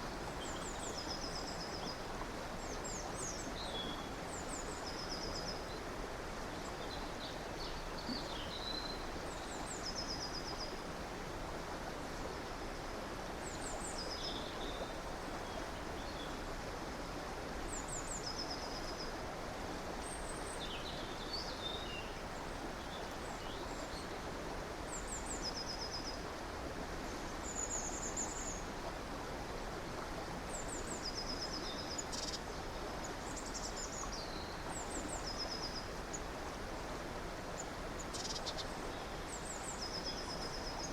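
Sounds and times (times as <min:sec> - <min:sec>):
stream rushing: 0:19.1 - 0:40.9.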